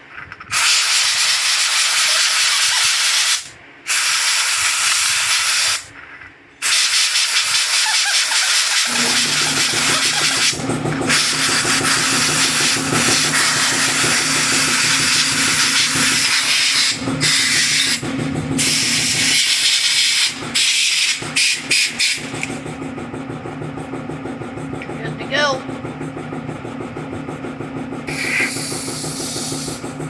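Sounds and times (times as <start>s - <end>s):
aerosol spray hissing: 0.5s - 5.9s, 6.6s - 10.5s, 28.1s - 29.8s
steady low hum: 8.8s - 19.6s, 20.2s - 30.0s.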